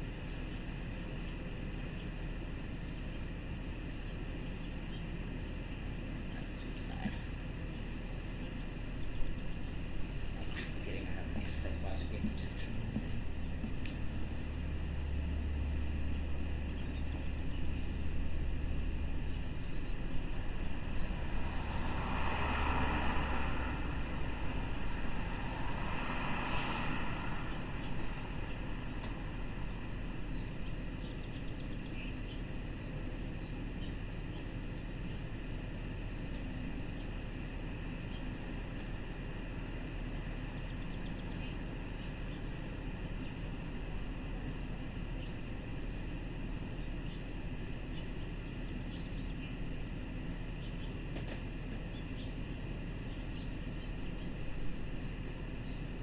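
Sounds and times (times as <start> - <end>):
road traffic rumble: 0.0 - 56.0
faint bird chirps: 0.4 - 21.1, 26.5 - 35.3, 40.1 - 42.6, 46.6 - 49.6, 53.0 - 56.0
vehicle passing: 9.6 - 31.5.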